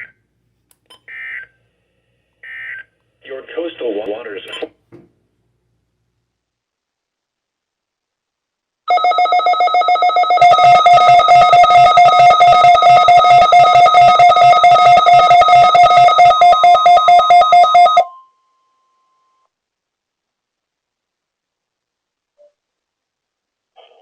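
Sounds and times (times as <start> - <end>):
rapid electronic alarm beeping: 10.2 - 18.0.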